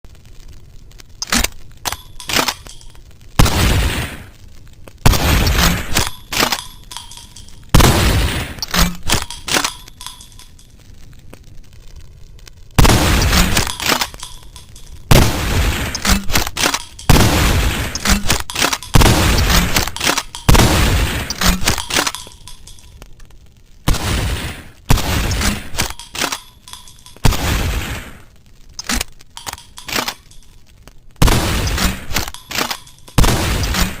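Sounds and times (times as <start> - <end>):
sharp metallic clicks: 1.2 - 3.6, 5.1 - 10.8, 12.8 - 23.3, 24.9 - 27.8, 28.8 - 34.0
shotgun blasts: 3.4 - 4.3, 5.0 - 6.8, 7.7 - 10.3, 12.8 - 14.4, 15.1 - 22.3, 23.9 - 26.5, 31.2 - 34.0.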